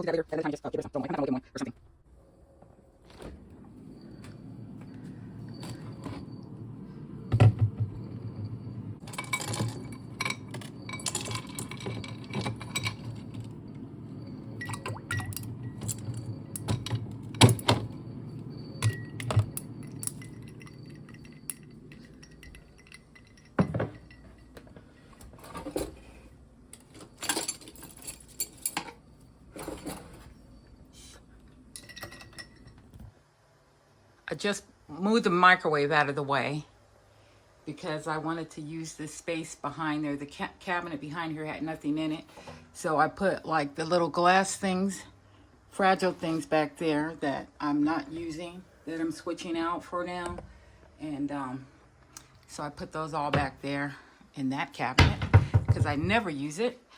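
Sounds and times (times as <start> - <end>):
steady low hum: 0.0 - 26.8
glass and dishware clinking: 9.0 - 24.7, 31.7 - 32.9.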